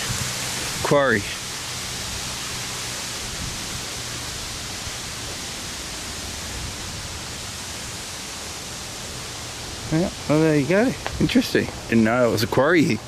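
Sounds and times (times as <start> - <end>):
water falling over waterfall: 0.0 - 13.0.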